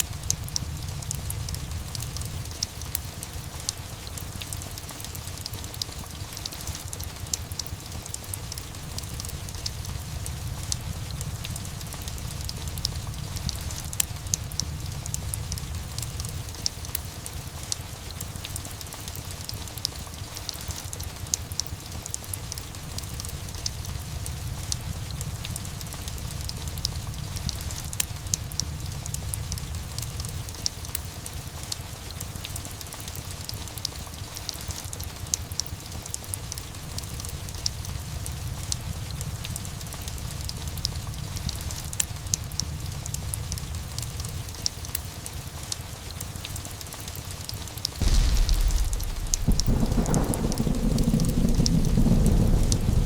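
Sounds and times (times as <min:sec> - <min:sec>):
steady rain: 0:00.0 - 0:53.0
fireplace crackling: 0:48.0 - 0:53.0
low rumble: 0:48.0 - 0:53.0.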